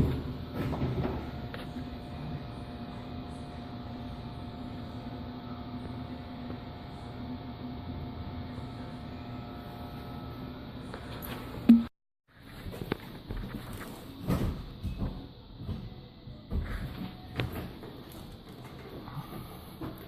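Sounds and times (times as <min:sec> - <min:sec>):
machine hum with held tones: 0:00.0 - 0:11.9.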